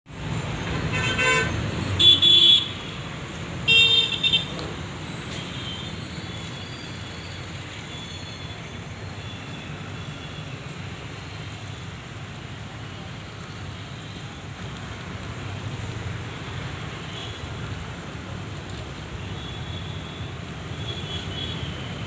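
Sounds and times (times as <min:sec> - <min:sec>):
road traffic rumble: 0:00.1 - 0:22.0
vehicle horns honking: 0:00.8 - 0:02.9, 0:03.7 - 0:04.5.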